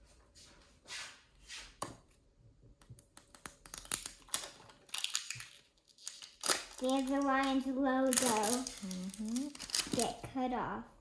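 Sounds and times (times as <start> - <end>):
packaging rustling: 3.7 - 10.2.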